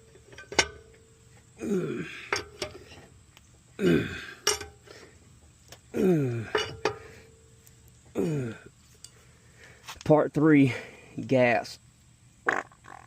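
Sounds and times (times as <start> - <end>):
person grunting: 1.6 - 2.3, 3.8 - 4.4, 5.9 - 6.6, 8.2 - 8.7.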